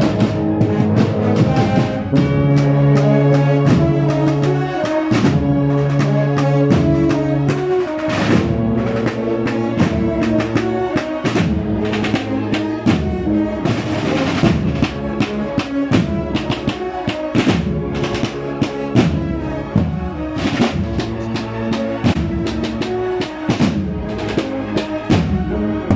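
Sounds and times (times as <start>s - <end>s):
brass band playing: 0.0s - 25.9s
snare drum rolls: 0.0s - 25.9s
bass drum beats: 8.3s - 25.9s.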